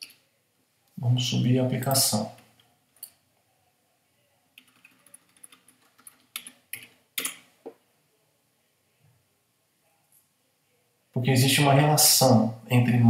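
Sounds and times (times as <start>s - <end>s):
keyboard typing: 4.6s - 7.5s.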